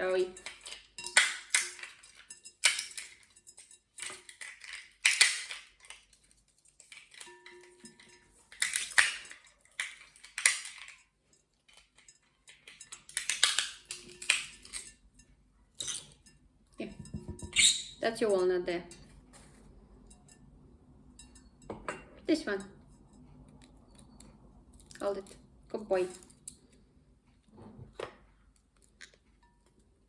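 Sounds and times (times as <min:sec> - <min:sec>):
walnut shells cracking: 0:00.4 - 0:03.2, 0:04.0 - 0:07.4, 0:08.5 - 0:11.0, 0:12.7 - 0:14.9
shell pieces clattering: 0:00.4 - 0:07.3.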